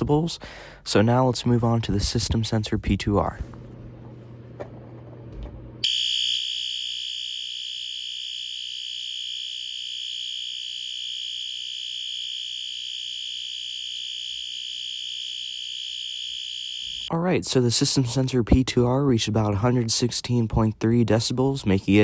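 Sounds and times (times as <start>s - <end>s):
buzzy fire alarm horn: 5.8s - 17.1s.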